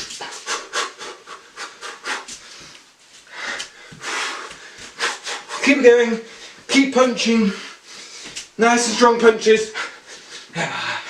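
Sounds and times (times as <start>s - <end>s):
man breathing hard: 0.0s - 6.7s.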